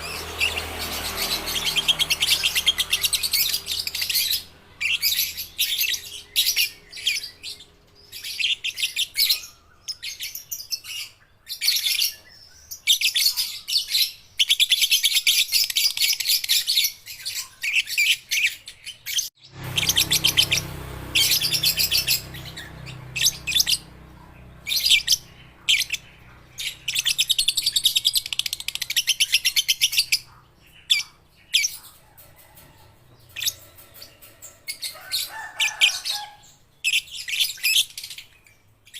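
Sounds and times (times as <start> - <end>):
lovebirds chirping: 0.0 - 38.9.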